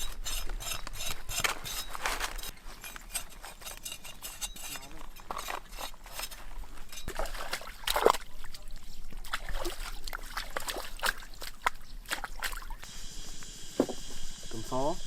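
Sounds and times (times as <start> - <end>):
water splashing and sloshing: 5.0 - 12.9.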